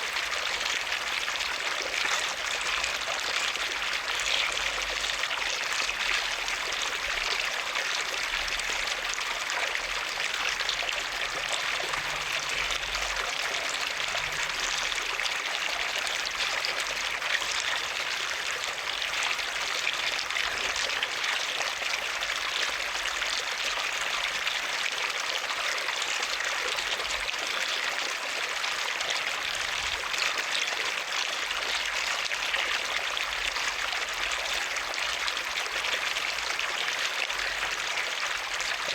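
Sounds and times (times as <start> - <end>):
water rushing and splashing: 11.0 - 32.5.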